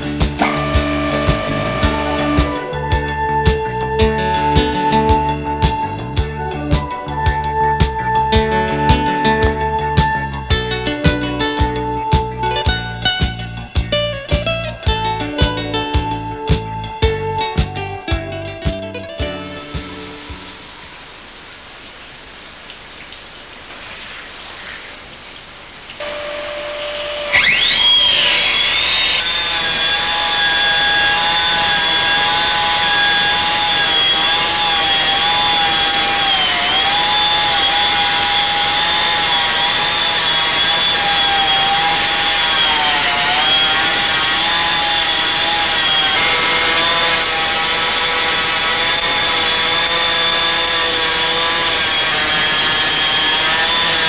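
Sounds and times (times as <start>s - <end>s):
stone-cutting machine whine: 0.0s - 5.6s, 26.0s - 54.0s.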